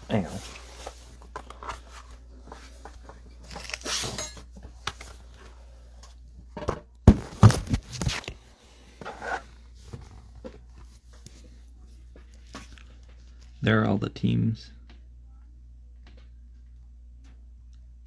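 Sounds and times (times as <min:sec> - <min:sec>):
objects handled on a table: 0:07.1 - 0:08.4.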